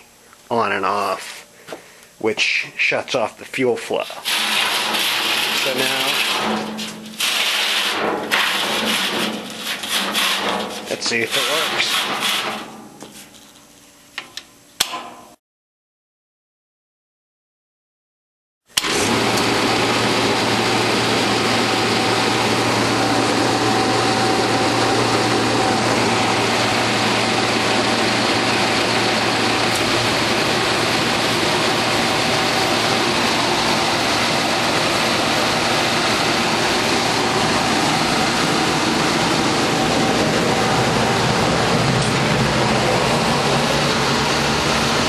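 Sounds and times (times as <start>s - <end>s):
heater fan and burner rushing: 0.0s - 15.1s, 18.7s - 45.0s
low hum: 22.6s - 45.0s.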